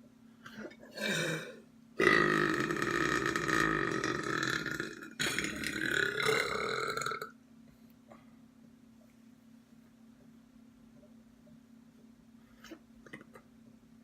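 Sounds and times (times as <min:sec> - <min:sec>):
person belching: 0:00.9 - 0:07.3.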